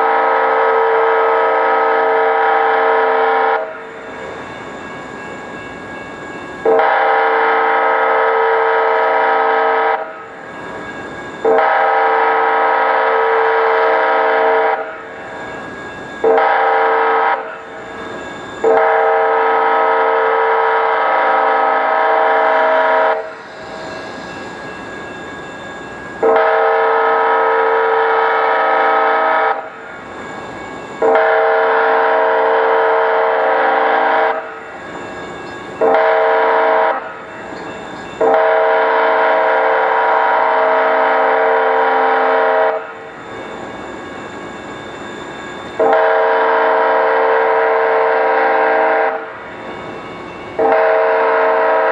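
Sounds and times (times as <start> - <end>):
train horn blasts: 0.0 - 3.9, 6.6 - 10.3, 11.4 - 15.2, 16.2 - 17.6, 18.6 - 23.4, 26.2 - 29.7, 31.0 - 34.7, 35.8 - 37.2, 38.2 - 43.0, 45.8 - 49.4, 50.6 - 51.9.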